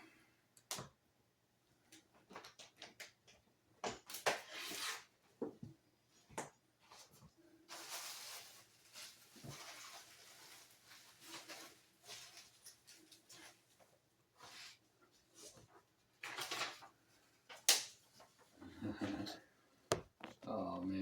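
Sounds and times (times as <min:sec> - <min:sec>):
packaging rustling: 0:07.7 - 0:13.8.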